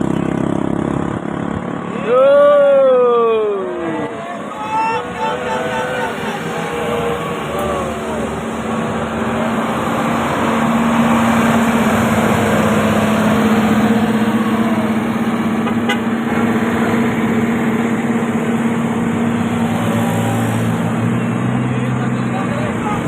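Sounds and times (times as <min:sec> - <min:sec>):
bus engine and road noise: 0:00.0 - 0:23.0
musical air horn long note: 0:15.6 - 0:16.4.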